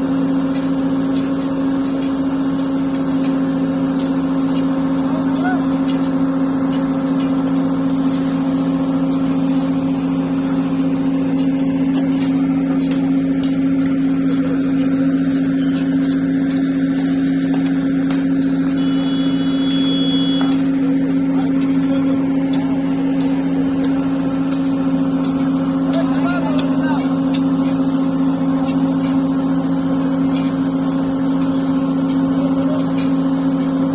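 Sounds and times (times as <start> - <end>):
heavy diesel engine droning: 0.0 - 33.9
short high-pitched tone: 18.7 - 20.7.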